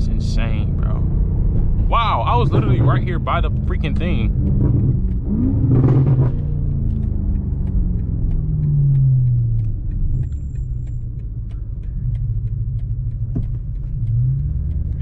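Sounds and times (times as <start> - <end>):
car engine at low revs: 0.0 - 15.0
road and tyre rumble: 0.0 - 15.0.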